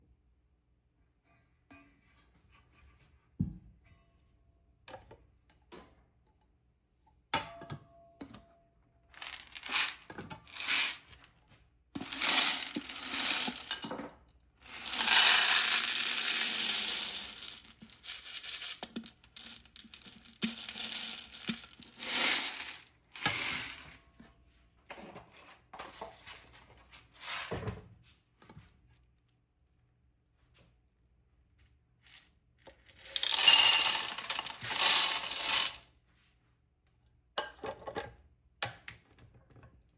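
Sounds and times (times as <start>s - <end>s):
popcorn packaging crinkling: 9.2s - 11.2s, 12.0s - 13.9s, 14.6s - 23.6s, 33.0s - 35.8s.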